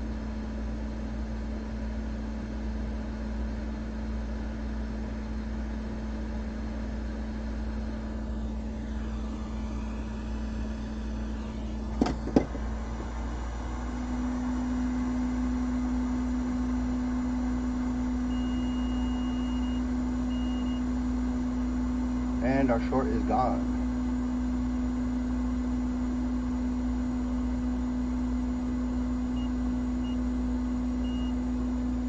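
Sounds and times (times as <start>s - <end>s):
hot air blower humming: 6.8s - 32.0s.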